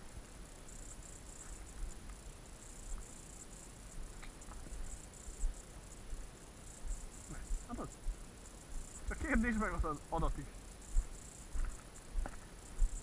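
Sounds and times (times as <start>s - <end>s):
crickets chirping: 0.0s - 13.0s
faint clicks: 4.2s - 4.7s.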